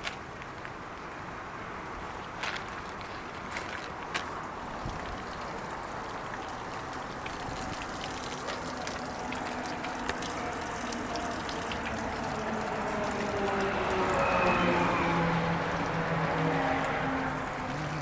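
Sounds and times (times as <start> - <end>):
water gushing and churning: 2.7 - 18.0
faint outboard engine hum: 5.7 - 18.0.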